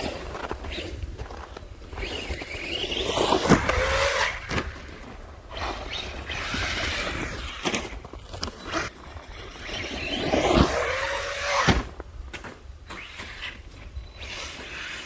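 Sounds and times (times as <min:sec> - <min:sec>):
tyres scrabbling on icy snow: 0:00.0 - 0:15.0
electric motor whining: 0:01.9 - 0:11.9.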